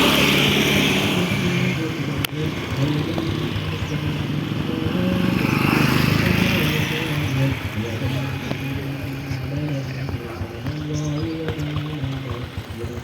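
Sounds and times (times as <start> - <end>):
loud bass-heavy music: 0.0 - 13.0.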